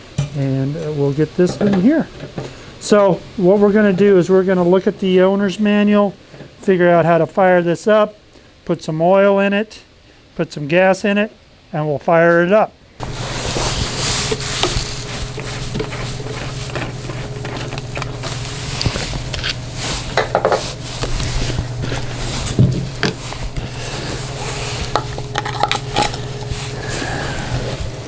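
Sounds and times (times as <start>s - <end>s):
bottle and funnel clinking: 13.0s - 28.0s
low steady hum: 13.0s - 28.0s
oil pouring through funnel: 13.0s - 28.0s.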